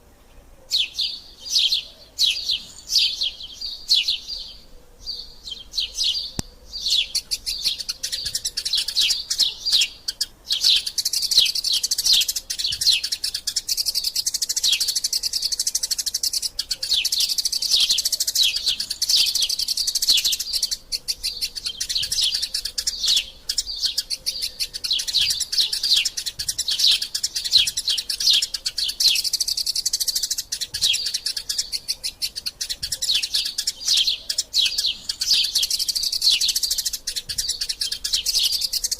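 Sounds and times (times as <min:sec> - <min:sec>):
sparrows chirping: 0:00.0 - 0:38.9.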